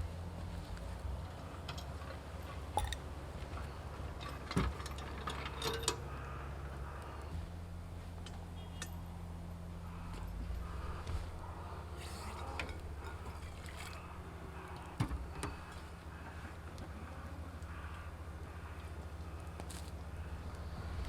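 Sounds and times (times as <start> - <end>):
steady low rumble: 6.2 - 21.0.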